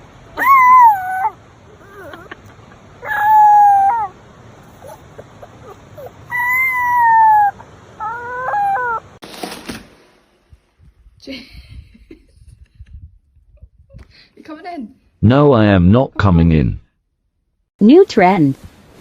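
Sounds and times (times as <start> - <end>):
long animal calls: 0.4 - 9.2.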